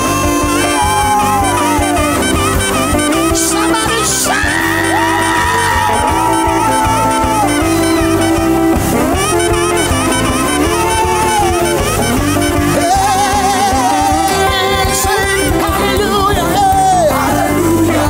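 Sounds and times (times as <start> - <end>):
gospel band accompaniment: 0.0 - 18.0
person singing with vibrato: 12.4 - 18.0.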